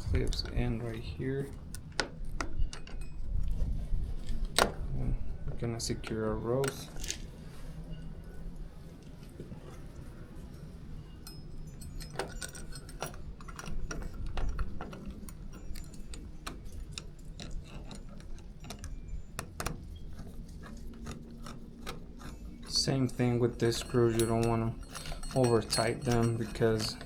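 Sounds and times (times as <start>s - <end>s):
loose metal parts clinking: 11.1s - 27.0s
screws driven by hand clicking: 12.2s - 27.0s.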